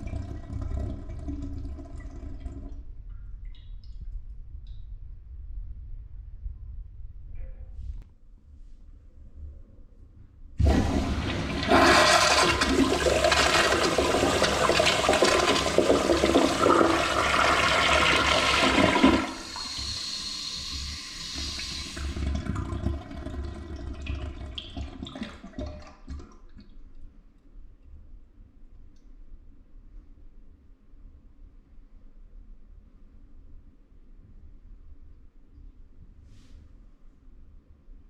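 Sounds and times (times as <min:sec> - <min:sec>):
toilet flushing: 0:00.0 - 0:02.9, 0:10.6 - 0:26.6.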